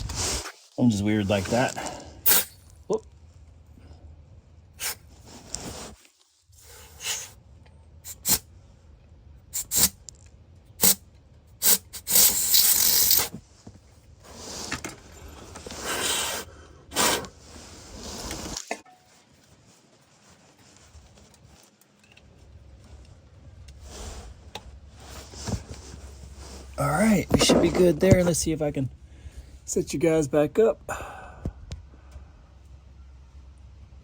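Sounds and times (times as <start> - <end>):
metal pick scraping connector: 11.6 - 13.3
handling noise: 25.0 - 28.8.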